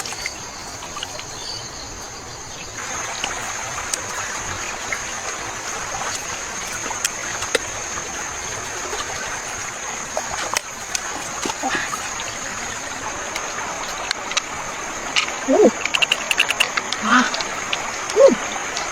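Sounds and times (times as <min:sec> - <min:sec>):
water running and trickling: 0:00.0 - 0:18.9
sharp clicks: 0:15.2 - 0:17.5.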